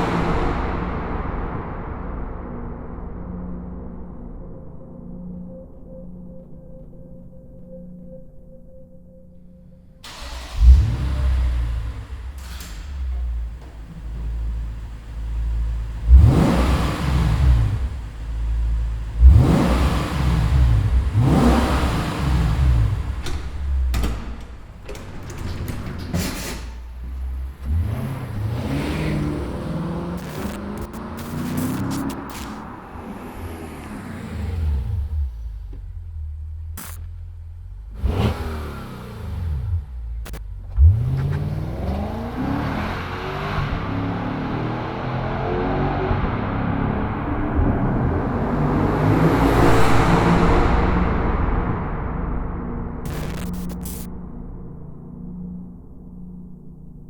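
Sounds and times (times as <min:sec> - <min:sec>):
exhaust cracks: 0:10.0 - 0:43.0, 0:46.1 - 0:56.2
car exhaust rumble and revs: 0:10.0 - 0:57.0.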